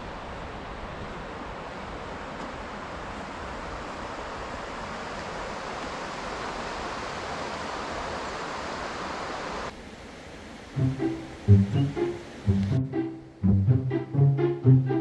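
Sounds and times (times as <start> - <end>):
rushing water: 0.0 - 15.0.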